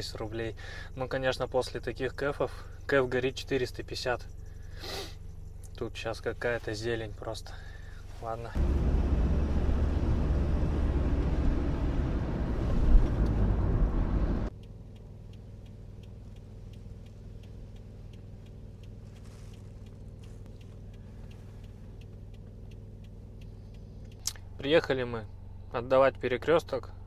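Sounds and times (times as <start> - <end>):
quiet engine hum: 0.0 - 27.0
road and engine noise: 0.0 - 27.0
faint ticks: 14.5 - 24.6.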